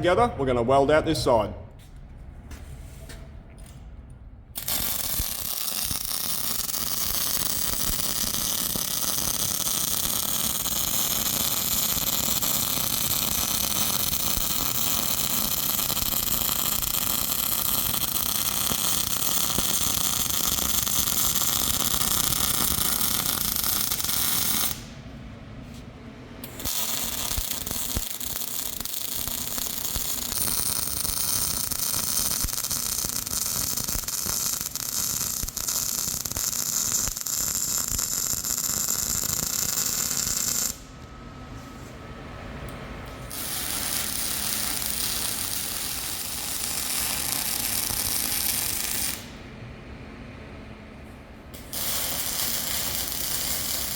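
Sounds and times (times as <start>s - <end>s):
welder hissing: 4.6s - 24.9s.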